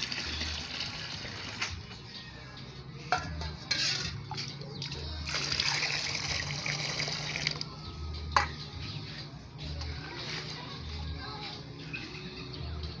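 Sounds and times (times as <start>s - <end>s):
liquid pouring and splashing: 0.0s - 1.8s, 4.8s - 7.7s.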